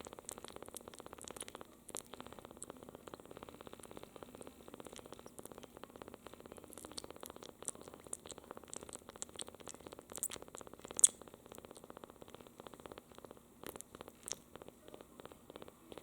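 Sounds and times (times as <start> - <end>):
kitten licking clicks: 0.0 - 16.0
kitten purring: 0.0 - 16.0.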